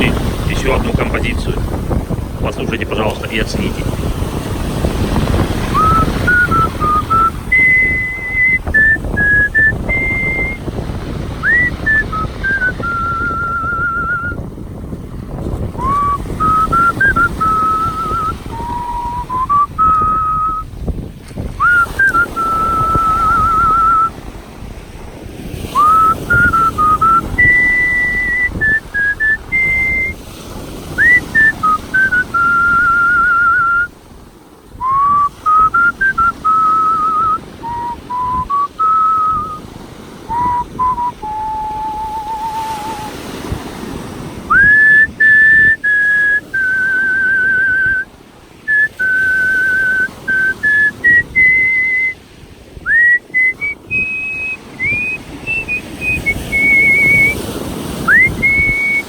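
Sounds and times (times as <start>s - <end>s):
man whistling a melody: 5.6s - 10.6s, 11.4s - 14.4s, 15.8s - 20.7s, 21.6s - 24.2s, 25.6s - 30.2s, 31.0s - 34.0s, 34.8s - 39.7s, 40.3s - 43.3s, 44.5s - 48.1s, 48.7s - 52.2s, 52.8s - 59.0s.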